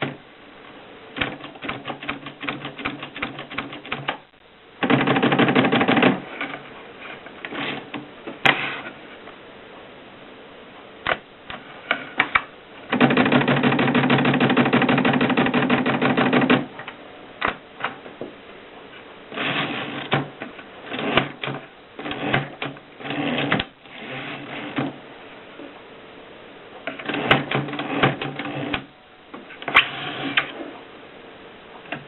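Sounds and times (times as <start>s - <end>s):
typewriter keystrokes: 1.2s - 4.2s, 12.9s - 16.6s.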